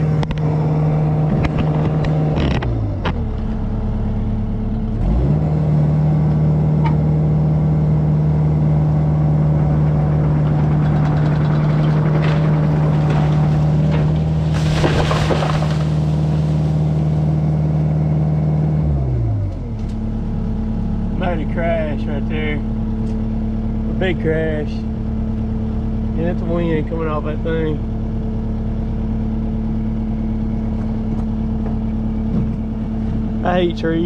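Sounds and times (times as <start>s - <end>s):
vehicle engine revving: 0.0s - 28.0s
crackling of falling tree: 9.8s - 17.3s.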